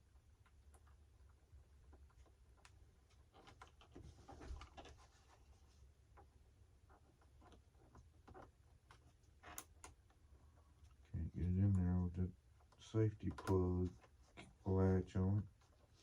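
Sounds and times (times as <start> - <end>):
clicks and rustles of plastic plugs: 12.6 - 14.5.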